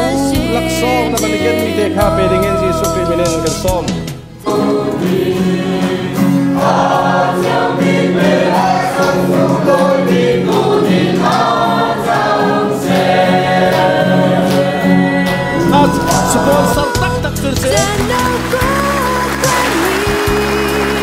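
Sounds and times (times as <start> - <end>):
choir singing a hymn: 4.4 - 21.0.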